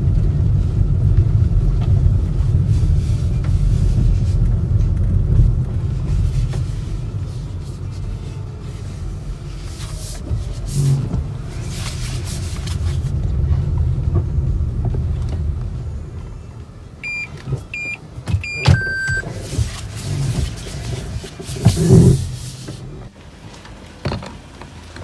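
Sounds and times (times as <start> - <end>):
low steady rumble: 0.0 - 23.6
high electronic beeps: 17.0 - 19.2
longer lower beep: 17.0 - 19.2.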